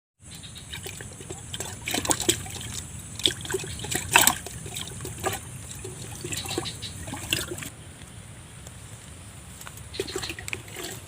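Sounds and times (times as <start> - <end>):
water splashing and trickling: 0.2 - 7.7, 9.8 - 11.0
low steady background hiss: 0.2 - 11.0.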